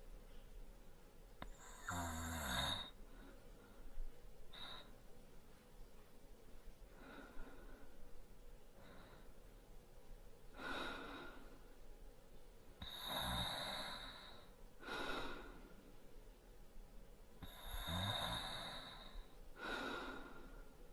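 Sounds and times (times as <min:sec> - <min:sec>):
man breathing and snoring lightly: 0:10.5 - 0:11.8, 0:12.8 - 0:15.9, 0:17.4 - 0:20.9.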